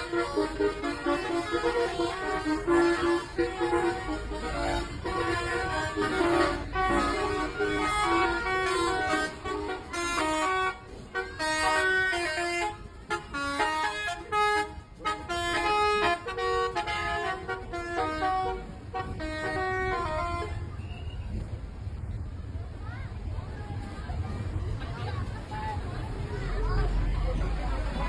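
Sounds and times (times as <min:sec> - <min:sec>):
multi-note bus horns: 0:00.0 - 0:21.4
low engine rumble: 0:00.0 - 0:28.0.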